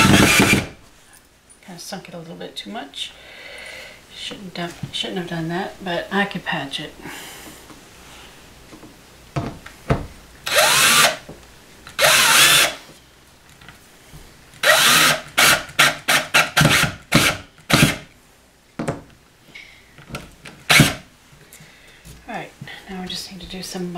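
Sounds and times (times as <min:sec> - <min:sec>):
power drill driving screws: 0:00.0 - 0:00.8, 0:10.4 - 0:11.2, 0:11.9 - 0:12.8, 0:14.6 - 0:18.0, 0:20.7 - 0:21.0.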